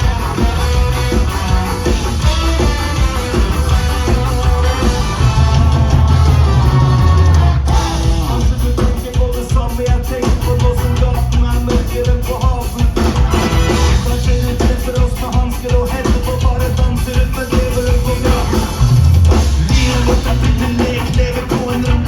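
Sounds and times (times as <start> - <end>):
drum kit strokes: 0.0 - 22.0
electric guitar: 0.0 - 22.0
live rock band playing: 0.0 - 22.0
person singing: 19.6 - 22.0.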